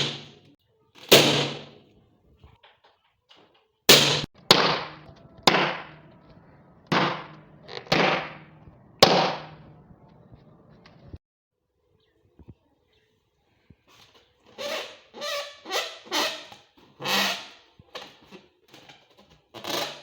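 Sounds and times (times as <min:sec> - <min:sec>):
balloons popping: 0:01.1 - 0:01.8, 0:03.9 - 0:11.0.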